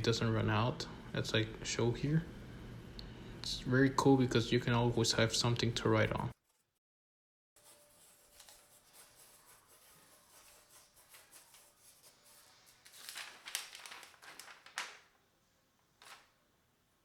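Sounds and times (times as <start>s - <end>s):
light scratching: 7.6s - 14.5s.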